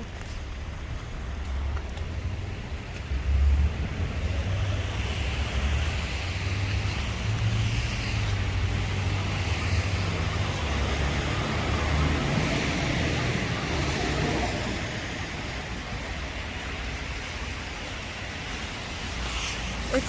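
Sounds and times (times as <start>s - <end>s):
wind rumble on the microphone: 0.0s - 19.9s
tyres hissing on wet street: 0.0s - 20.0s.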